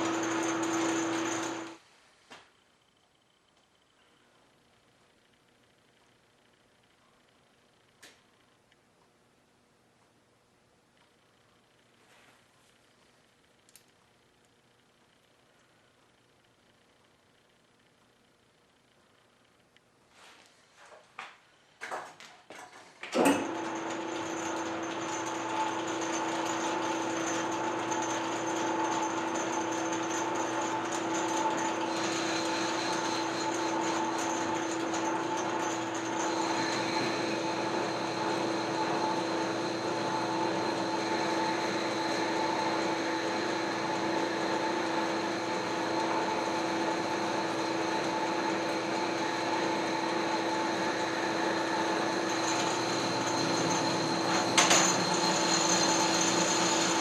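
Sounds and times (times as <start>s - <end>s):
machine tool motor humming: 0.0s - 1.8s, 23.1s - 57.0s.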